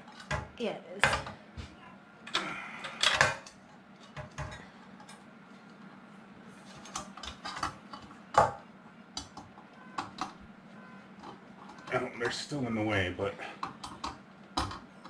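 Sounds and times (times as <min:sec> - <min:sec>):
clicks taps and knocks of parts: 0:06.8 - 0:10.4, 0:13.6 - 0:15.0.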